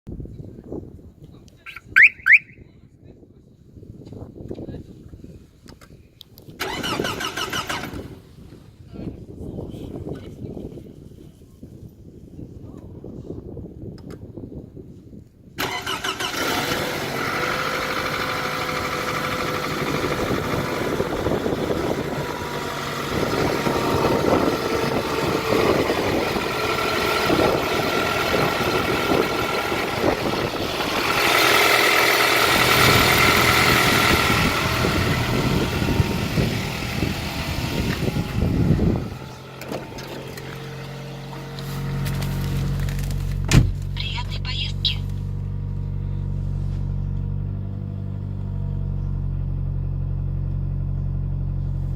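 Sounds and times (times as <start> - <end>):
car engine rattling on cold start: 6.6 - 8.4, 15.6 - 44.3
car engine idling: 17.1 - 51.9.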